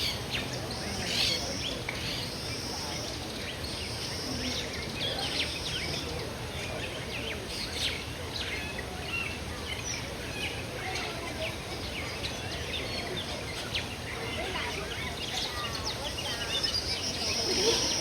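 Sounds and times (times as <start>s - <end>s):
low background noise: 0.0s - 18.0s
birds chirping: 11.8s - 18.0s.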